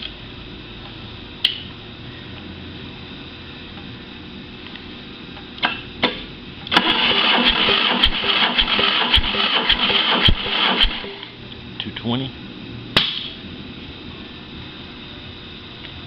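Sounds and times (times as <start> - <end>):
starter motor whirring: 6.7 - 11.1.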